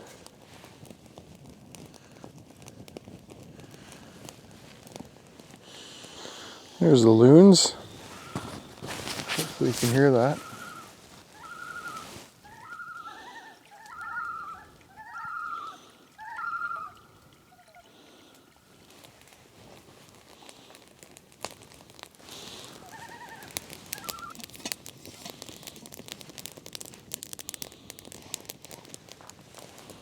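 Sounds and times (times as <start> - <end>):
loons calling: 6.8 - 18.8, 22.4 - 24.4.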